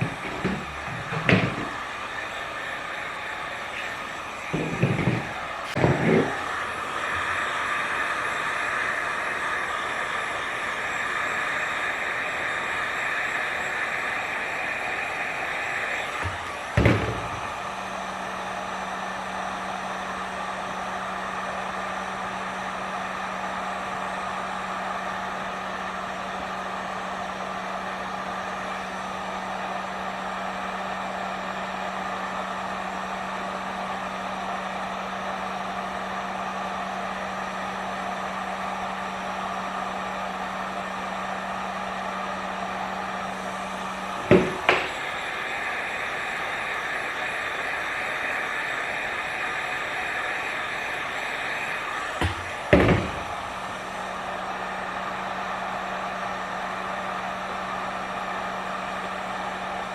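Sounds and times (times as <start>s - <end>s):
heat gun blowing: 0.0s - 55.0s.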